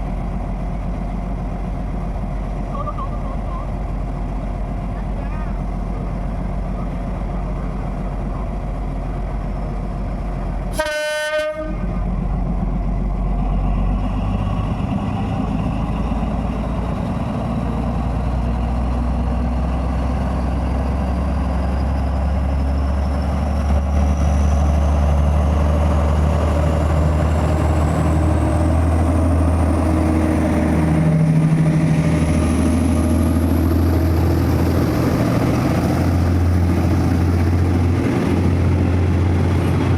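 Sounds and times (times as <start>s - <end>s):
locomotive engine rumble: 0.0s - 39.9s
train horn blast: 10.7s - 12.0s.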